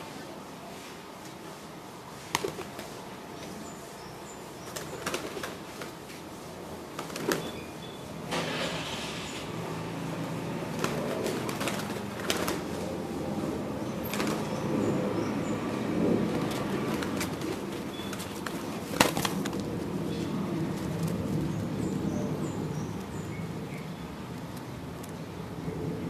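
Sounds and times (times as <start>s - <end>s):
wing flaps: 2.3s - 3.0s, 10.6s - 13.0s, 14.0s - 14.6s, 16.0s - 20.0s
pigeons cooing: 10.5s - 23.3s.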